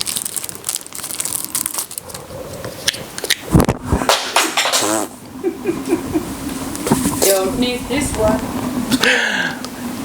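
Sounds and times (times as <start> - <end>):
plastic packaging crinkling: 0.0 - 3.5.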